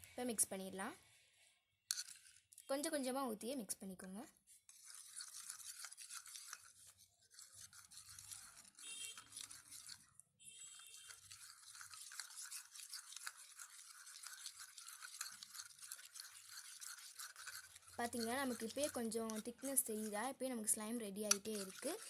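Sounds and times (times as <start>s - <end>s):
mixture stirred in a bowl: 1.9s - 2.6s, 4.0s - 22.0s.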